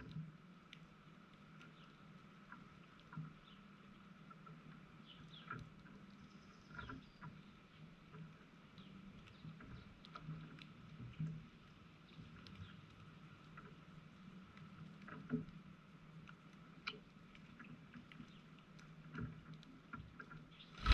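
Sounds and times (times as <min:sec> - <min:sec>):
soft ticks: 0:00.0 - 0:20.9
small birds chirping: 0:20.5 - 0:20.9.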